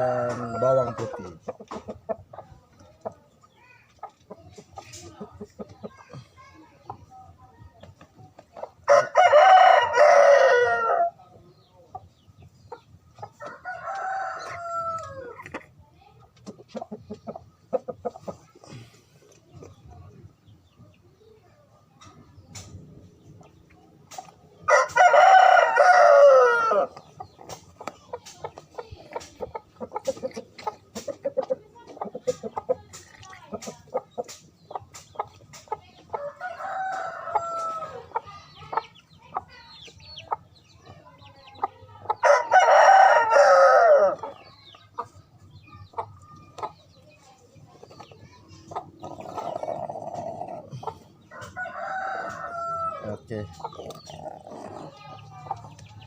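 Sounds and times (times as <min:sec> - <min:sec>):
chicken clucks and ticks: 0:00.0 - 0:09.0, 0:11.3 - 0:56.0
rooster crowing: 0:08.9 - 0:11.1, 0:24.7 - 0:26.9, 0:42.2 - 0:44.2, 0:51.6 - 0:53.0.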